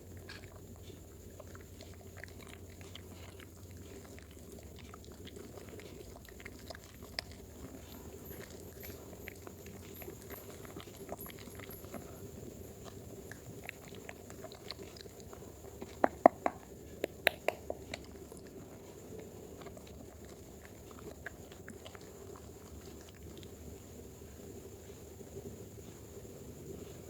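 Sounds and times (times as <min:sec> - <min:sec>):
sharp wet clicks: 0:13.3 - 0:18.6.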